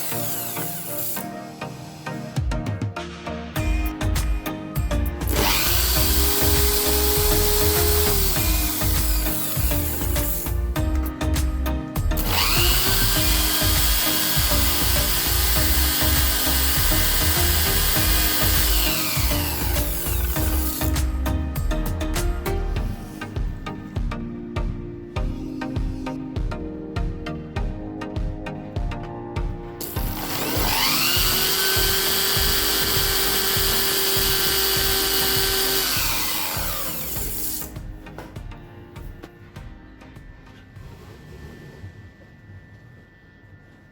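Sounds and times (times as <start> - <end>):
small power tool motor: 0.0 - 1.2, 5.3 - 10.5, 12.2 - 20.9, 29.8 - 37.7
background music: 0.0 - 43.9.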